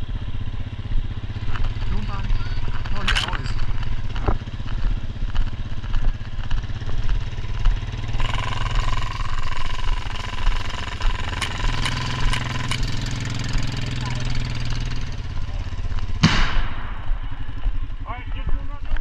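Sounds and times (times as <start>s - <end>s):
vehicle engine running: 0.0s - 19.0s
sharp clicks: 1.4s - 15.2s.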